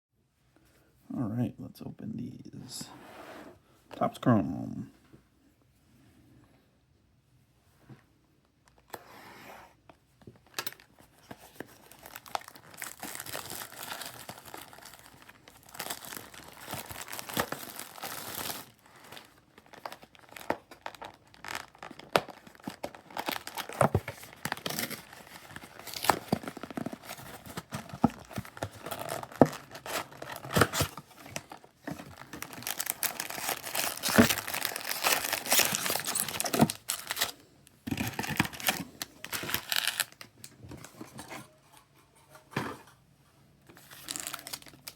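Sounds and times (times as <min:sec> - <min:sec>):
foil wrappers crinkling: 0:10.4 - 0:40.3, 0:43.8 - 0:44.9.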